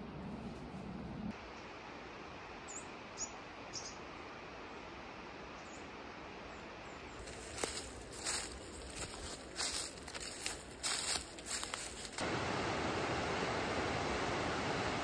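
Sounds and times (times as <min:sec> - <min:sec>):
steady outdoor hiss: 0:00.0 - 0:15.0
small bird chirping: 0:02.7 - 0:04.0.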